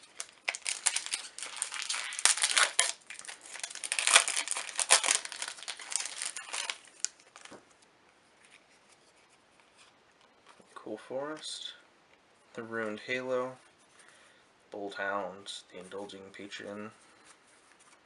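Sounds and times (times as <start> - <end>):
foil wrapper crinkling and tearing: 0.0 - 7.6.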